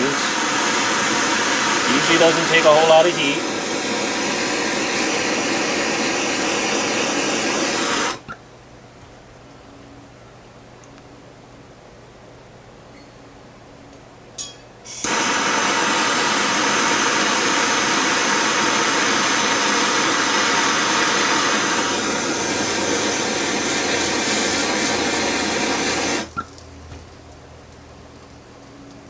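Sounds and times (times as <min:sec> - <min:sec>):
heat tool blowing hiss: 0:00.0 - 0:08.3, 0:14.9 - 0:26.4.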